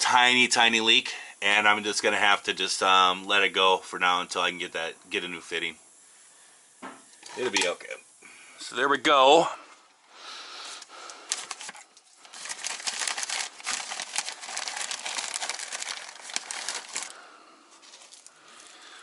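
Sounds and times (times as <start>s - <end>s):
crackling handling noise: 7.0s - 8.0s, 10.7s - 19.0s.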